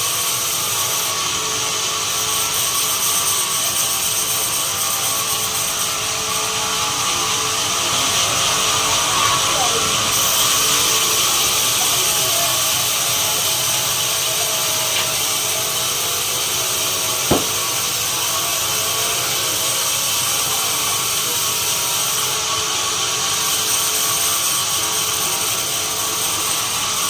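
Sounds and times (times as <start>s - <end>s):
sawmill saw cutting wood: 0.0s - 18.5s
sharp knock: 17.3s - 17.7s.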